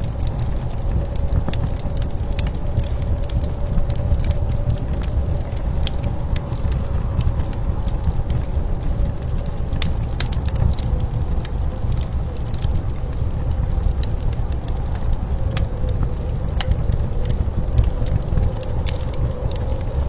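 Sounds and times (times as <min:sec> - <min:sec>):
blizzard wind rumble: 0:00.0 - 0:20.0
crackling fire: 0:00.0 - 0:20.0.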